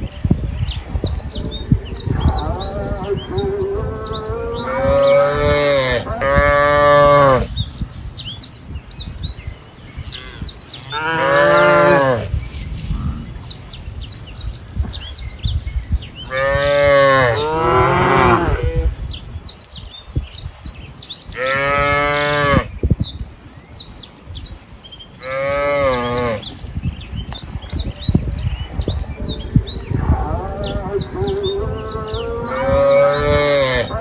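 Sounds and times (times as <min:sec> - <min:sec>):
small birds chirping: 0:00.0 - 0:34.0
cattle mooing: 0:02.1 - 0:07.5, 0:29.6 - 0:34.0.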